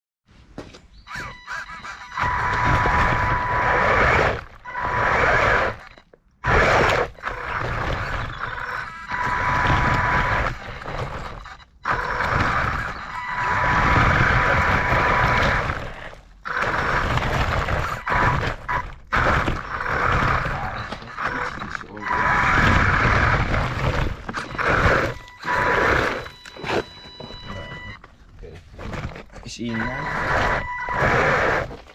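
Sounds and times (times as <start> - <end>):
radio-controlled car whining: 1.0 - 31.9.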